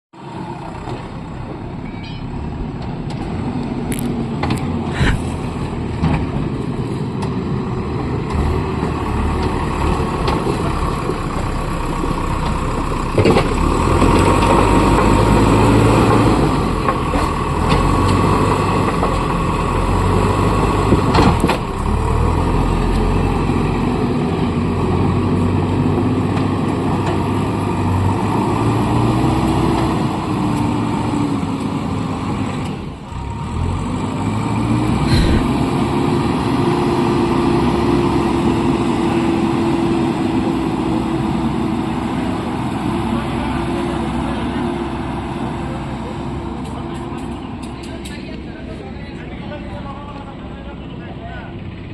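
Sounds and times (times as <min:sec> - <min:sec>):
excavator diesel engine running: 0:00.2 - 0:51.9.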